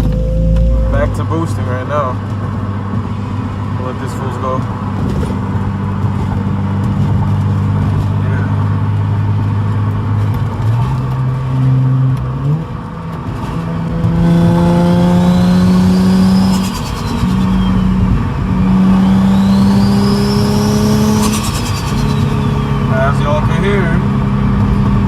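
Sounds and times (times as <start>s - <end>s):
car engine revving: 0.0s - 25.0s
turbo whistle: 15.6s - 23.3s.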